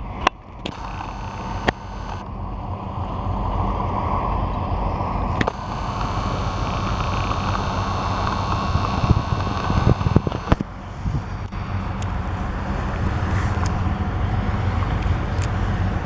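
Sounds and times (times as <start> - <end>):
train engine hum: 0.0 - 16.0
sharp clicks: 0.2 - 2.2, 5.4 - 10.7.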